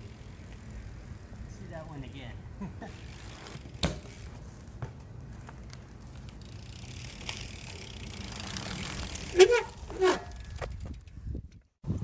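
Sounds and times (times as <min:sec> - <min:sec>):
bike hub freewheeling clicking: 0:00.0 - 0:02.1, 0:02.8 - 0:04.4, 0:05.7 - 0:11.7.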